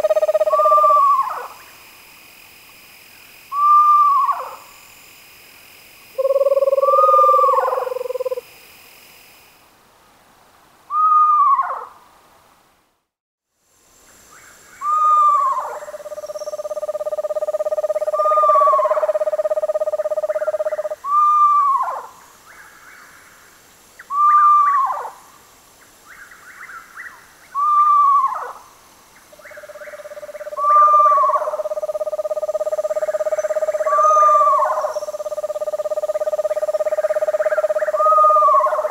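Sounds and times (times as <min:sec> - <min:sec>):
screech owls calling: 0:00.0 - 0:01.5, 0:03.5 - 0:04.6, 0:06.2 - 0:08.4, 0:10.9 - 0:11.9, 0:14.8 - 0:22.1, 0:27.6 - 0:28.6, 0:29.4 - 0:38.9.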